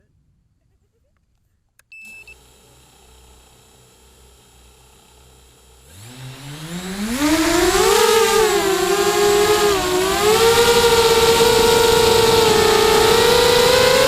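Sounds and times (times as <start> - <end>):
short high beep: 1.9 - 2.4
drone motors humming: 2.2 - 14.0.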